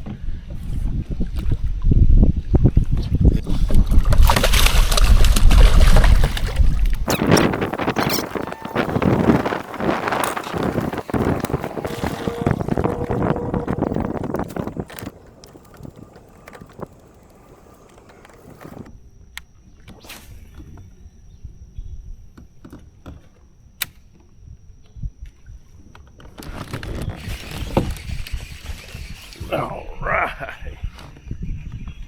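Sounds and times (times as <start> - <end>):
wind buffeting microphone: 0.0 - 18.9, 26.6 - 32.0
faint high whine: 0.3 - 32.0.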